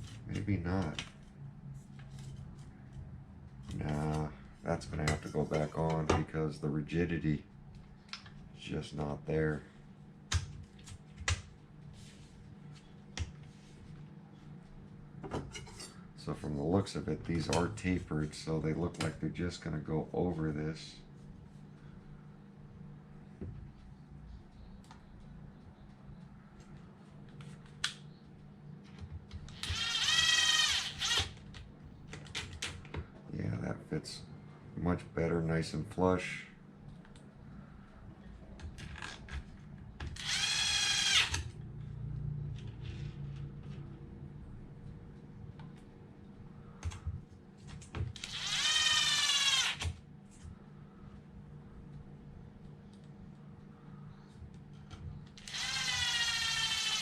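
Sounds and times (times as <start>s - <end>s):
cordless drill whining: 29.5s - 31.3s, 40.2s - 41.4s, 48.2s - 49.9s, 55.4s - 57.0s.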